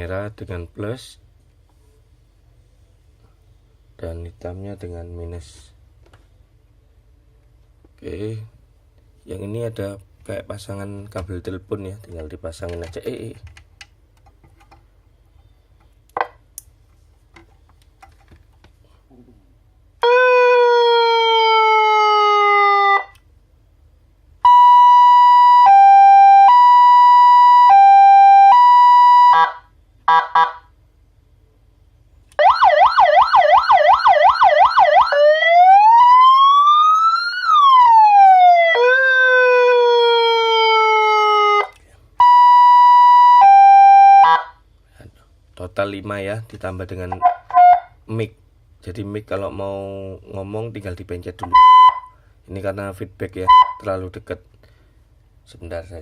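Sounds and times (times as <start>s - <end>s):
electronic siren horn: 20.0s - 23.2s, 24.4s - 30.7s, 32.4s - 44.6s, 47.2s - 48.0s, 51.5s - 52.1s.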